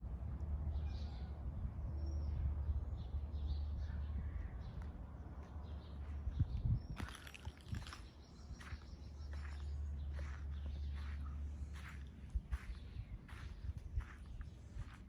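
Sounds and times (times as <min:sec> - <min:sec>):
steady low rumble: 0:01.4 - 0:15.0
birds chirping and calling: 0:03.4 - 0:15.0.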